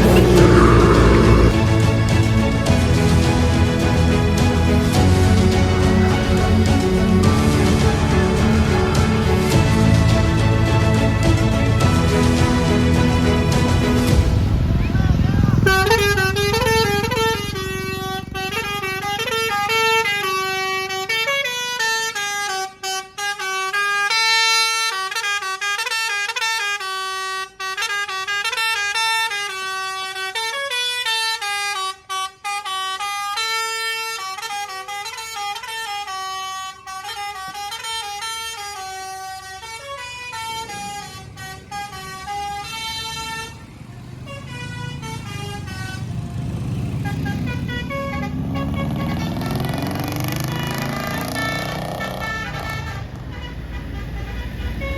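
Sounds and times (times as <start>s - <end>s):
vehicle noise: 0.0s - 21.8s, 37.3s - 54.9s
multi-tone bus air horn melody: 0.0s - 54.9s.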